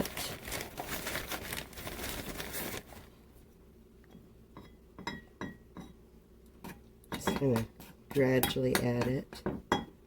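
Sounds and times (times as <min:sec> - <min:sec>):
plastic bag crinkling: 0:00.0 - 0:03.2.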